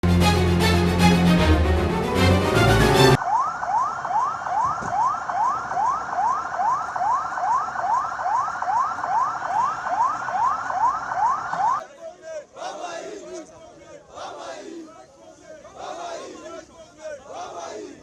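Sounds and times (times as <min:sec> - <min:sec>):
siren yelping: 0:03.0 - 0:11.8.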